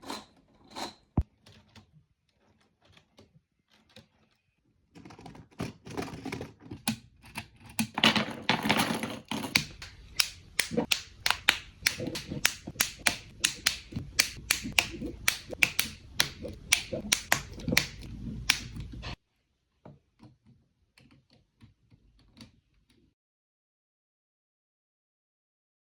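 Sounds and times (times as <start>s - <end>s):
plastic engine model clicking: 9.5s - 19.1s.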